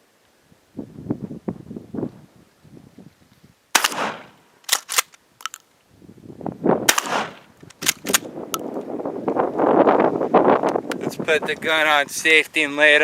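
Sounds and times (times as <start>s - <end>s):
shotgun blasts: 3.7s - 5.0s, 6.9s - 8.2s
shotgun slide pumping clack: 3.8s - 5.6s, 6.9s - 8.7s.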